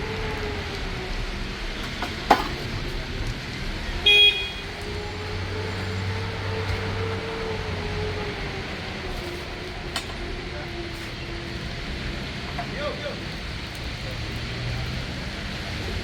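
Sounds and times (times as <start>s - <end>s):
traffic noise: 0.0s - 16.0s
car horn toot: 4.0s - 4.8s.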